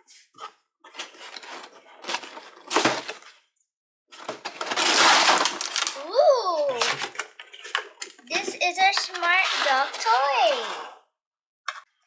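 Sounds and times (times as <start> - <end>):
packaging rustling and tearing: 0.9 - 3.3, 4.2 - 6.1, 6.8 - 7.9
box scraping and knocking: 4.2 - 6.0, 8.3 - 11.0.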